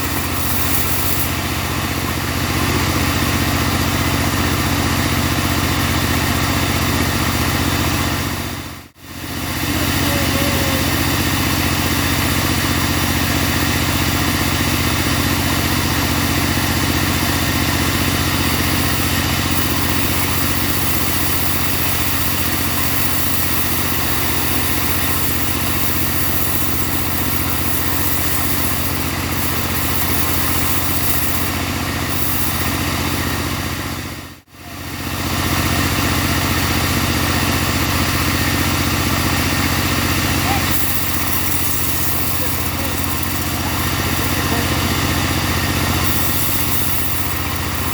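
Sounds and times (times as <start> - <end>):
bandsaw sawmill engine running: 0.0 - 47.9.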